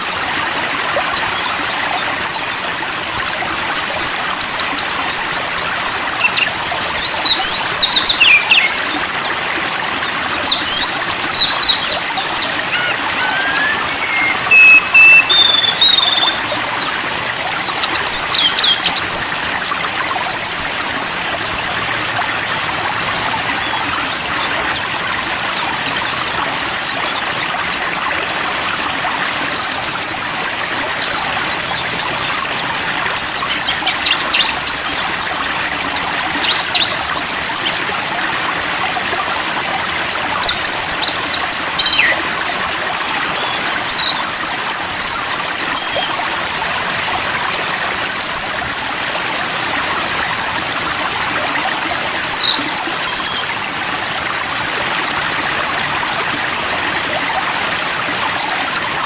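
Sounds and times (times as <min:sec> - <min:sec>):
stream water rushing: 0:00.0 - 0:59.0
songbird chirping and whistling: 0:11.4 - 0:16.5.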